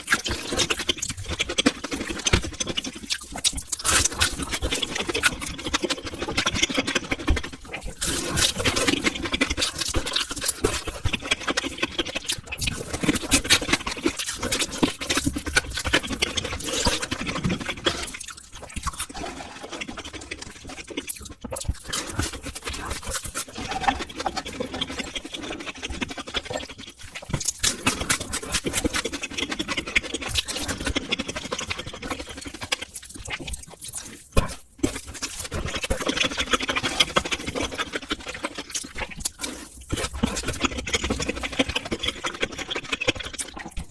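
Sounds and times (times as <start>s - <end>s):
person chewing and slurping noodles: 0.0s - 43.9s.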